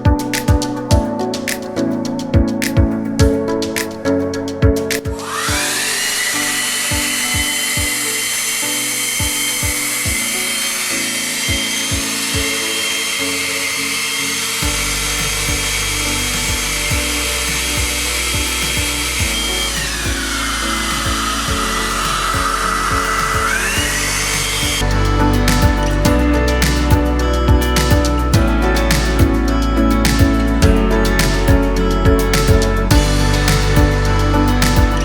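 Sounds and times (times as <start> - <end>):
background music with steady beat: 0.0 - 13.2, 14.5 - 35.0
hair dryer running: 5.2 - 24.8.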